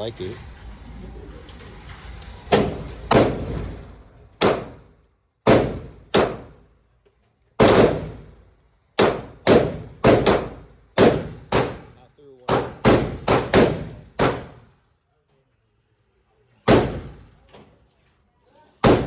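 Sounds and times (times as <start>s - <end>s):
pistol shots with echo: 4.4s - 4.9s, 5.5s - 6.6s, 7.6s - 8.3s, 9.0s - 11.9s, 12.5s - 14.6s, 16.7s - 17.3s.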